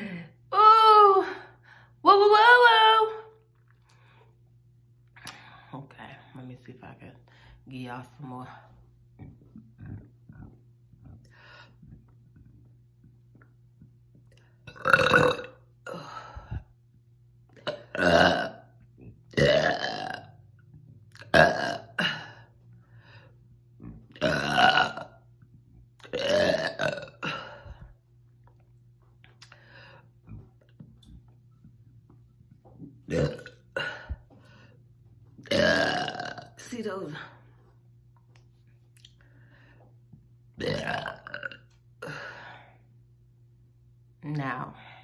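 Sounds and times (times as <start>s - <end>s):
person burping loudly: 14.7s - 16.3s, 17.6s - 20.4s, 21.1s - 22.5s, 23.8s - 25.2s, 26.0s - 27.9s, 33.0s - 34.2s, 35.4s - 36.6s, 40.6s - 42.4s.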